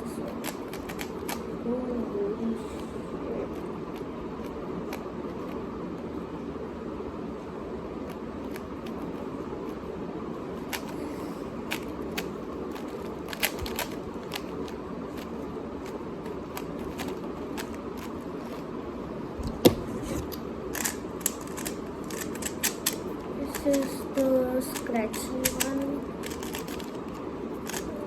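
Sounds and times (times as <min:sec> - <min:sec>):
steady background hiss: 0:00.0 - 0:28.0
puzzle cube clicks and turns: 0:00.2 - 0:01.5, 0:10.6 - 0:18.7, 0:19.4 - 0:28.0
puzzle cube clack: 0:11.7 - 0:18.6, 0:19.5 - 0:28.0.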